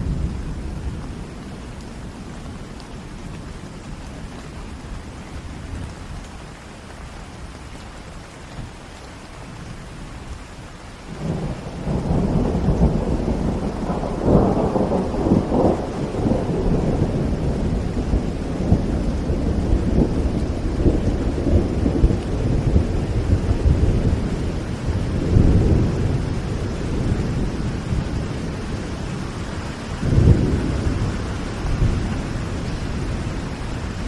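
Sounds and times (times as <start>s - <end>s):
steady rain: 0.0s - 34.0s
thunder rumbling: 11.1s - 34.0s.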